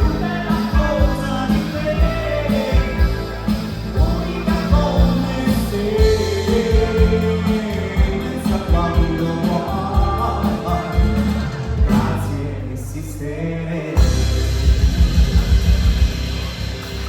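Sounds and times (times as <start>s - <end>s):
live band with singing: 0.0s - 17.0s.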